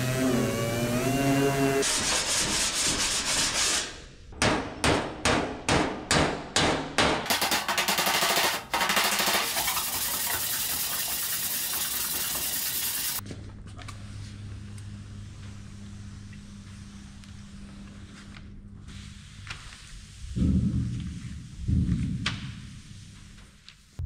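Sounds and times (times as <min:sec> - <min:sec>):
sandpaper sanding metal: 0:01.8 - 0:03.9, 0:07.3 - 0:13.2.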